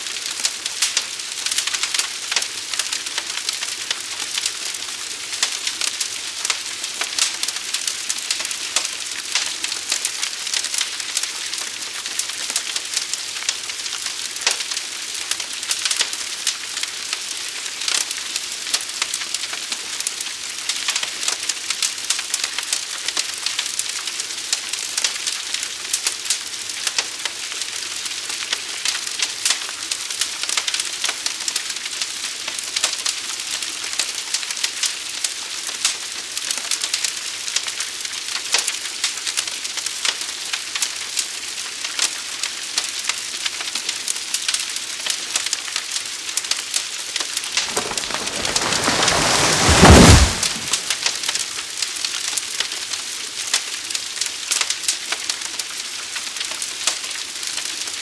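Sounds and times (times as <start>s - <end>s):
fire crackling and popping: 47.6s - 51.2s
fire hissing: 47.6s - 51.2s.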